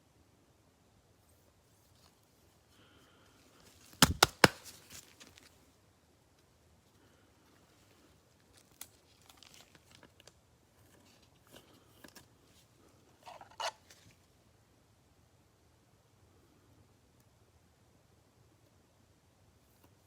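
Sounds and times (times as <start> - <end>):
soft packaging crinkles: 1.8 - 5.8, 6.9 - 14.3
tearing rustle: 3.6 - 5.6, 8.4 - 10.3.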